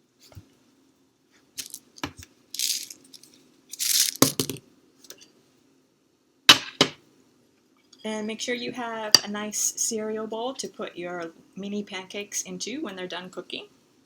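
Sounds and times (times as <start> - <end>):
short rattling bursts: 2.6 - 4.4.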